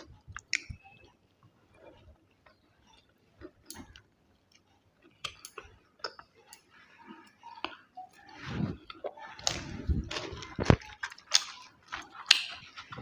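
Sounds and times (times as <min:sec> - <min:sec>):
person chewing food: 0:00.0 - 0:13.0.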